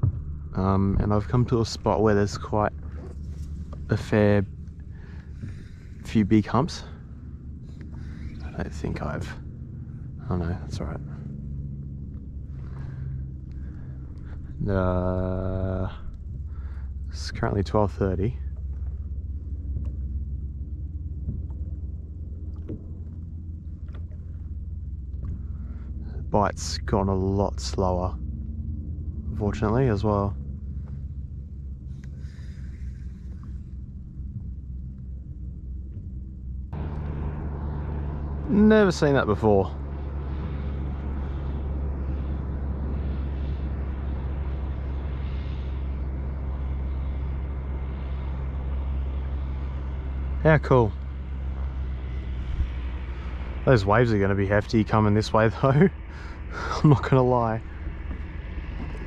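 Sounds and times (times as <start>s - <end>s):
low rumble on water: 0.0s - 59.0s
motor boat engine drone: 0.0s - 59.0s.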